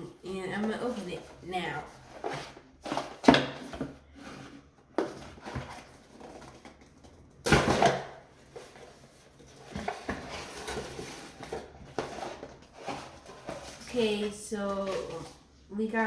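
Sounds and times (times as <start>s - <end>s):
knocks scrapes and rustling: 0.3s - 7.2s, 8.4s - 15.4s
gift box being opened: 0.6s - 7.1s, 7.7s - 15.4s.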